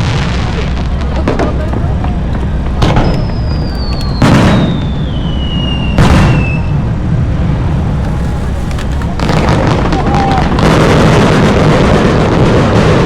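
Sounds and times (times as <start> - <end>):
firework bangs: 0.0 - 13.0
low rumble: 0.0 - 13.0
firework whistle falling in pitch: 2.9 - 6.8.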